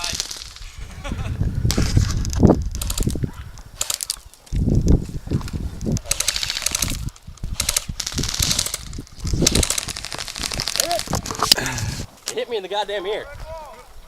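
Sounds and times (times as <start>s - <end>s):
airsoft guns firing bursts: 6.0s - 11.1s.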